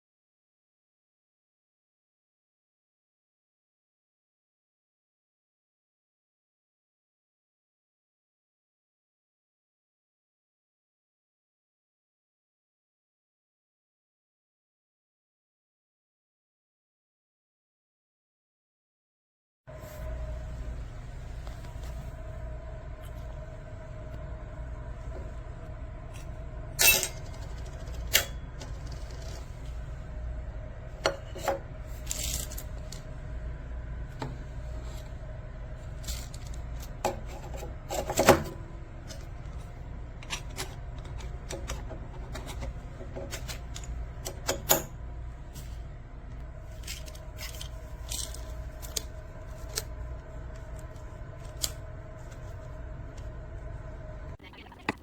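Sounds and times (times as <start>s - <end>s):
steady low hum: 19.7s - 55.0s.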